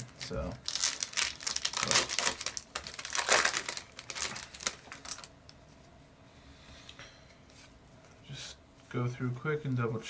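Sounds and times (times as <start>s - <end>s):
foil wrappers crinkling: 0.0s - 5.3s.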